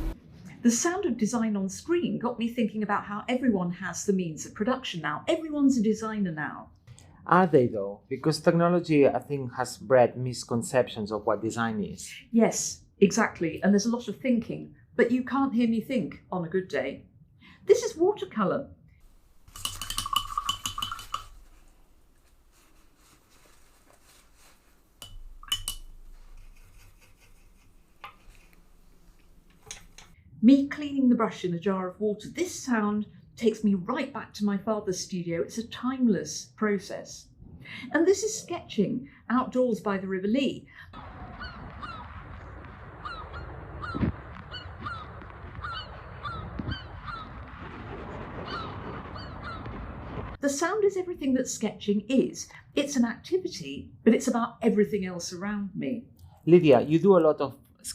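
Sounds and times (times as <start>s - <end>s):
background hiss: 19.0s - 30.2s
soft brush strokes: 19.1s - 30.2s
paintbrush clinking on container: 19.5s - 21.5s, 25.0s - 26.8s.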